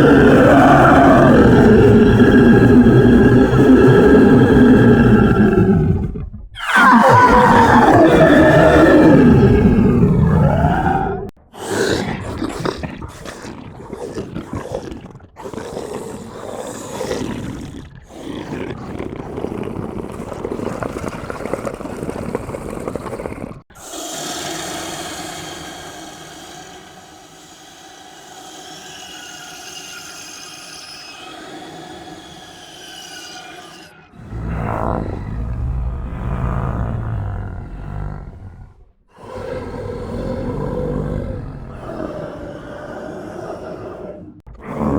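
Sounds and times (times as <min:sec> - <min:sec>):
harsh noisy horror sound: 0:23.8 - 0:38.1
low drone: 0:23.8 - 0:38.2
loud deep sound: 0:34.2 - 0:38.8.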